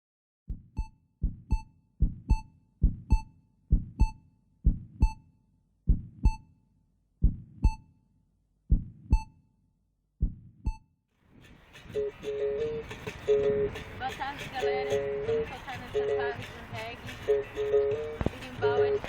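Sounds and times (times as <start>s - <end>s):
heartbeat thumps: 0.5s - 5.2s, 5.9s - 6.5s, 7.2s - 7.8s, 8.7s - 9.3s, 10.2s - 10.8s, 11.9s - 19.0s.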